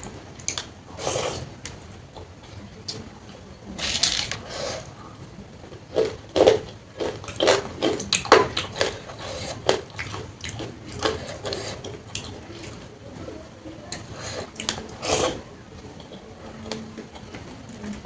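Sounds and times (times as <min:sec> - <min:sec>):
wet chewing and smacks: 0:05.7 - 0:13.3.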